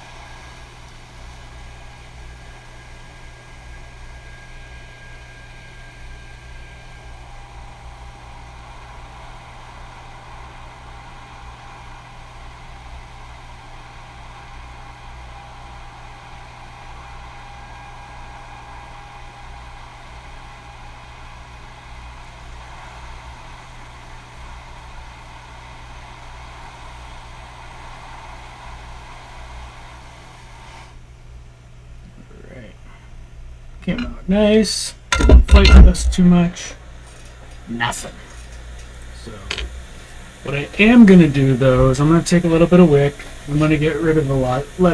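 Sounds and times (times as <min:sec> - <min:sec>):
hot air station blowing: 0:33.9 - 0:44.9.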